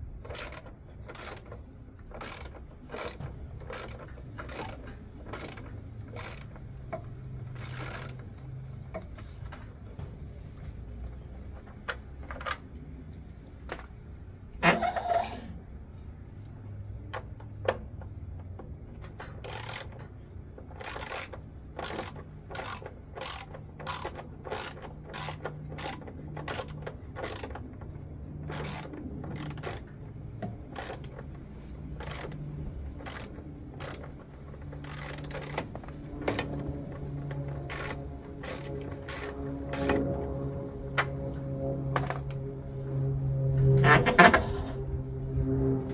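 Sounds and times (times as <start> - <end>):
low steady hum: 0.0 - 45.9
short mechanical clicks: 32.0 - 40.0.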